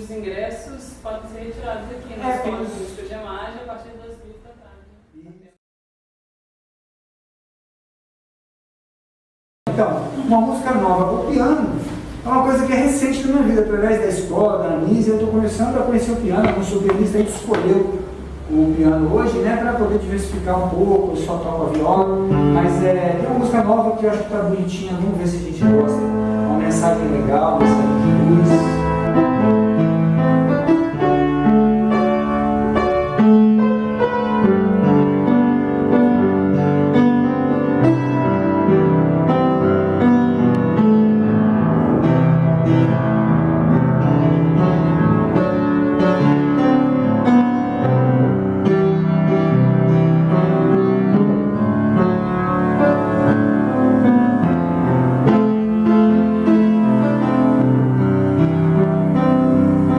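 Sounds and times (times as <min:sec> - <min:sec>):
piano piece: 0:00.0 - 0:05.6, 0:09.7 - 0:59.9.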